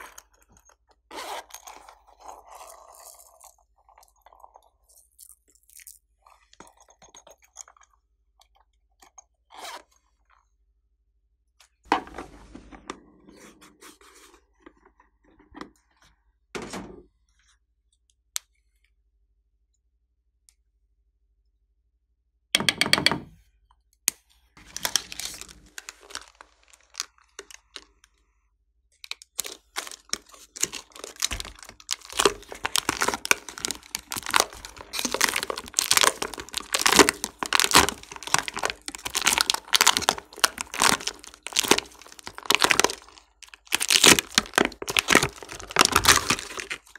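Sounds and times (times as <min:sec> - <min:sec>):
slime crackling and popping: 0:24.6 - 0:27.8, 0:29.2 - 0:46.9.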